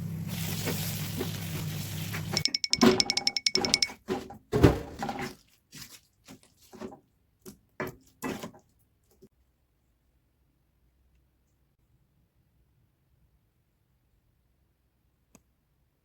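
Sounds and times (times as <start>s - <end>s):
utensil clinking against cookware: 2.4s - 4.0s.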